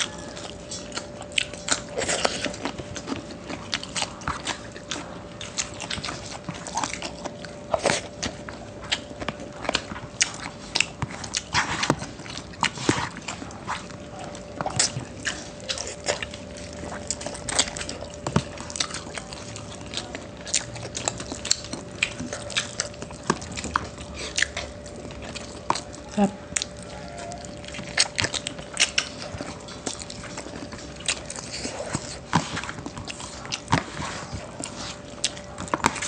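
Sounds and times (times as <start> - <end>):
chewing and lip smacks: 0.0 - 36.0.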